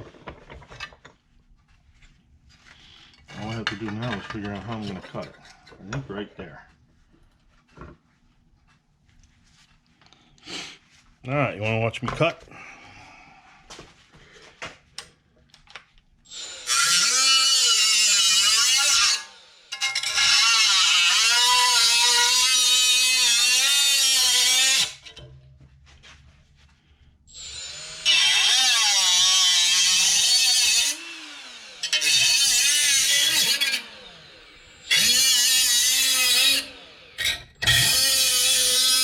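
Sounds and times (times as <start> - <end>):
power cutter whining through metal: 16.3 - 25.2, 27.3 - 39.0.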